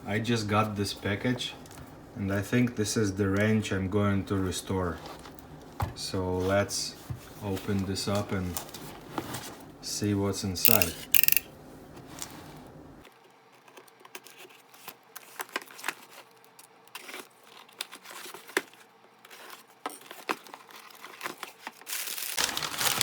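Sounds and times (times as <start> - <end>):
wrapping crinkling and tearing: 14.2 - 23.0.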